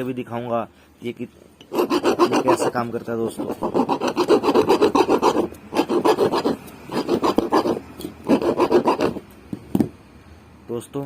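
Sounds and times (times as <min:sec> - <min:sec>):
file scraping metal: 0:01.6 - 0:09.3.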